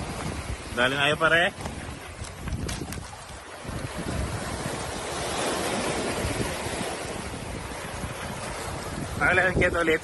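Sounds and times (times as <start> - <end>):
sea surf: 0.0 - 10.0
wind on microphone: 0.0 - 10.0.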